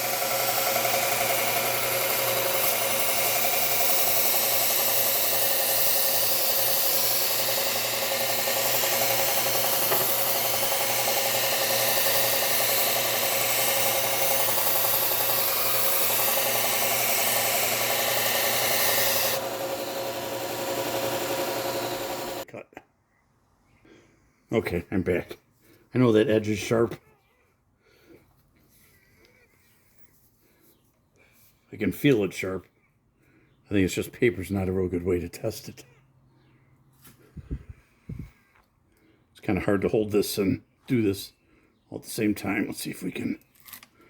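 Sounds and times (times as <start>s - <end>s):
blade grinding on belt sander: 0.0s - 22.4s
sander motor hum: 0.0s - 22.4s.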